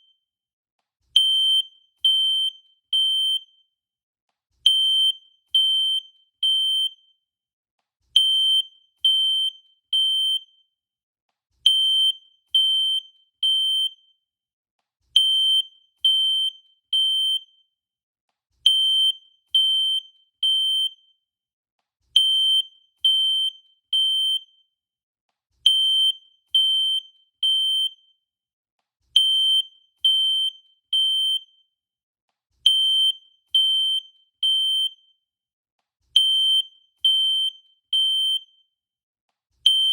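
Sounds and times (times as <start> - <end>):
fire alarm beeping: 36.2 - 38.6.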